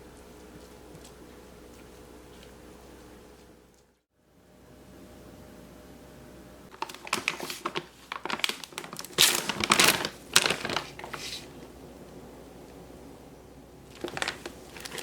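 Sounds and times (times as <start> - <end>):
crinkling and rustling handling: 6.7 - 11.7, 13.9 - 15.0.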